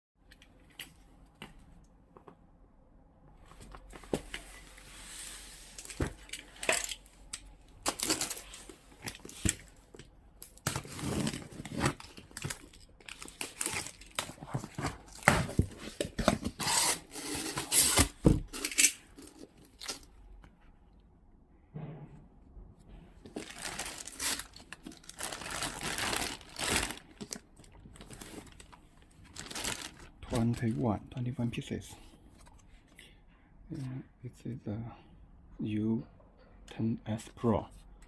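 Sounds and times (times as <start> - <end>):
packaging tearing and crinkling: 10.4 - 20.1, 23.4 - 30.6.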